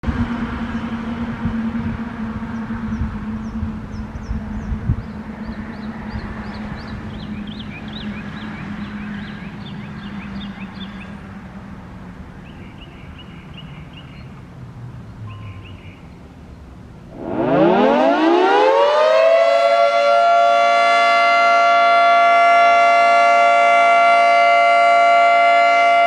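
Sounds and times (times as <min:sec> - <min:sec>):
low vehicle hum: 0:00.0 - 0:18.2
birds chirping: 0:02.5 - 0:11.3, 0:12.3 - 0:17.9.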